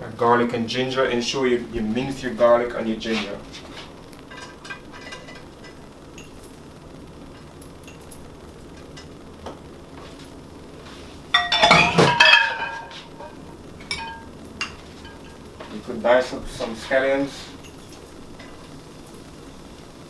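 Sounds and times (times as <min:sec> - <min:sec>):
kitchenware clink: 0:04.3 - 0:06.4, 0:11.3 - 0:15.4.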